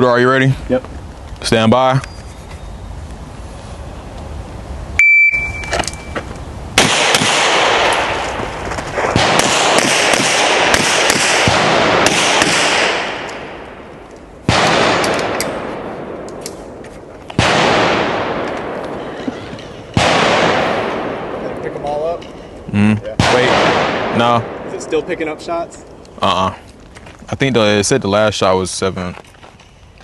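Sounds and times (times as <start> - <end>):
shot timer beep: 5.0 - 6.2
loud gunshots with echo: 6.8 - 16.3, 17.4 - 19.1, 19.8 - 22.2, 23.2 - 25.8
faint gunshot cracks: 9.0 - 13.4.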